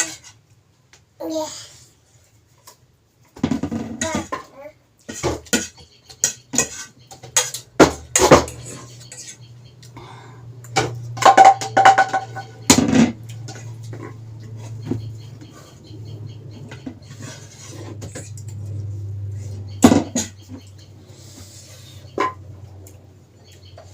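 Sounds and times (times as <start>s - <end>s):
cutlery and dishes clattering: 5.0s - 9.4s, 10.7s - 15.0s.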